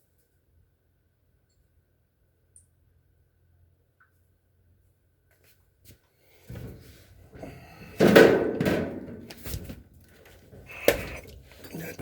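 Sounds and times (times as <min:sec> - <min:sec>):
knocks and rattles of parts: 0:06.5 - 0:12.0.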